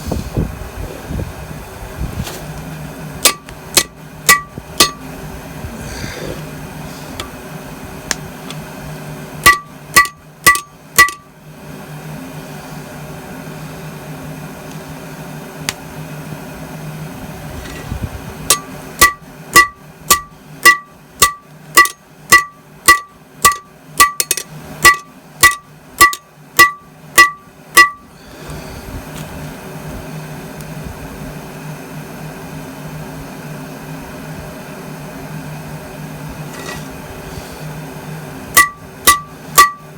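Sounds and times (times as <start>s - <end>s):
hammer striking metal anvil: 3.2s - 5.0s, 9.4s - 11.3s, 18.5s - 28.0s, 38.6s - 39.9s.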